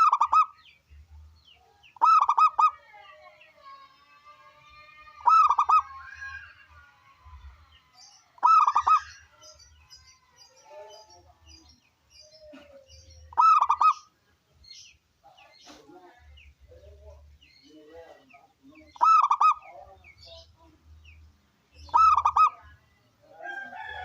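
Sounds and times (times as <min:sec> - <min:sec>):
dove cooing: 0:00.0 - 0:00.5, 0:02.0 - 0:02.8, 0:05.2 - 0:06.0, 0:08.4 - 0:09.2, 0:12.4 - 0:14.1, 0:19.0 - 0:19.8, 0:21.9 - 0:22.6.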